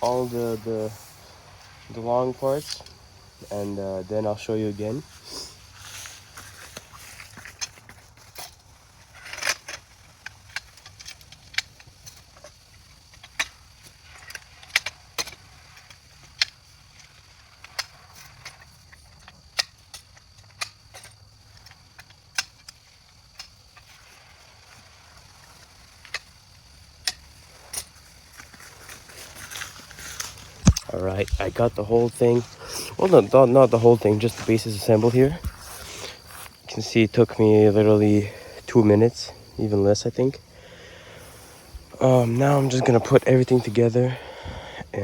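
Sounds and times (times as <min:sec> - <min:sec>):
faint handling rustle: 0:00.0 - 0:45.0
poles snapping together clicks: 0:30.2 - 0:31.4.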